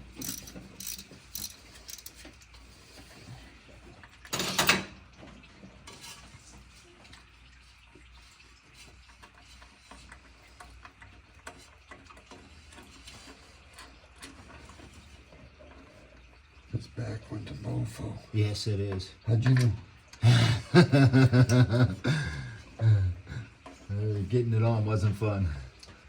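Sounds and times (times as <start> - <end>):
ratchet wrench clicking: 0.1 - 2.2.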